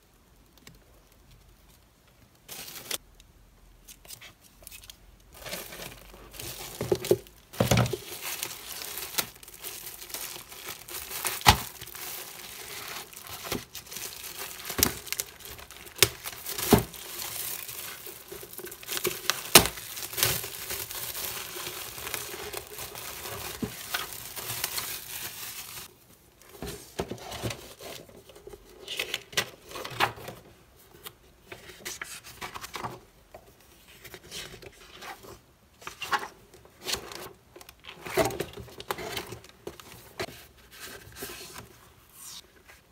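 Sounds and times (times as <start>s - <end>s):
packaging crinkling and tearing: 4.0s - 25.9s.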